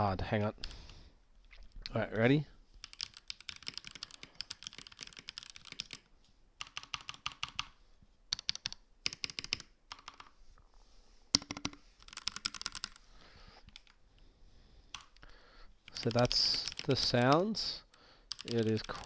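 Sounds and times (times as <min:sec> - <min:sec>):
mechanical keyboard typing: 0:02.8 - 0:10.4, 0:11.3 - 0:13.0, 0:13.7 - 0:14.0, 0:14.9 - 0:15.2, 0:15.9 - 0:19.0.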